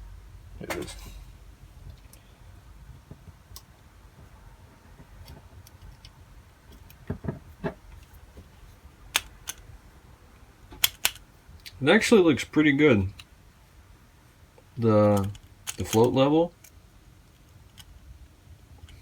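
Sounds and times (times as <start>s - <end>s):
clicks and taps of small parts: 9.2s - 9.7s, 10.7s - 11.8s, 15.0s - 18.0s.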